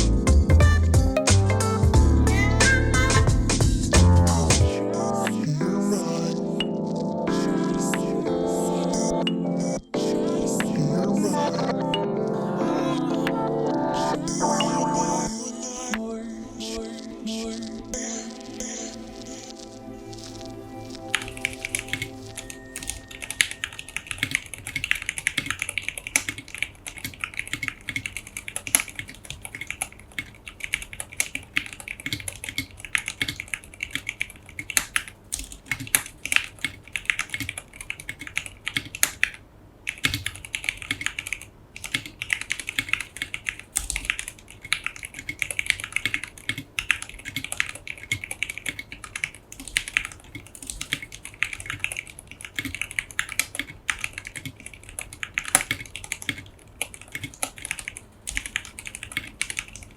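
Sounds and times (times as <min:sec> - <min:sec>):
background music: 0:00.0 - 0:24.4
fast mechanical keyboard typing: 0:21.1 - 0:59.9.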